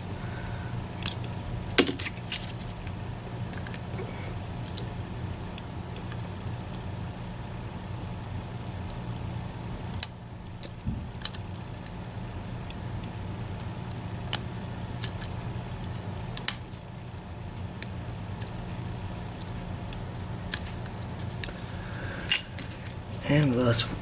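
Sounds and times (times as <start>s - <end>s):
low steady hum: 0.0s - 24.0s
lock pick clicking metal: 22.3s - 22.7s.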